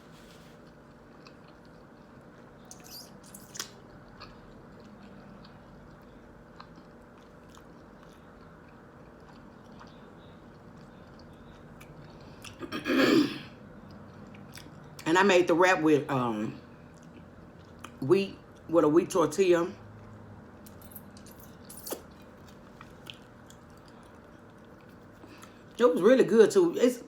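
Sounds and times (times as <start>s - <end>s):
chewing mouth sounds: 0.6s - 12.6s, 16.8s - 18.7s, 20.0s - 25.8s.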